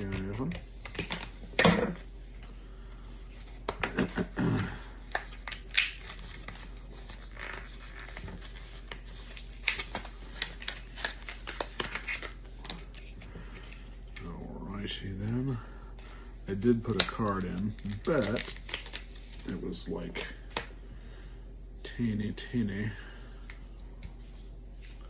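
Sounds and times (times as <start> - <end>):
hands handling plastic packaging: 5.0 - 14.3, 16.5 - 20.7.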